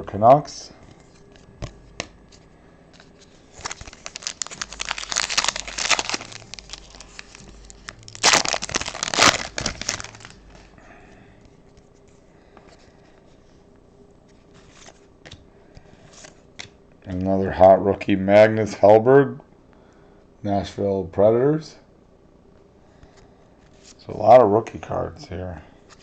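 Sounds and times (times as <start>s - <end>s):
crinkly packaging handled: 1.0s - 10.7s.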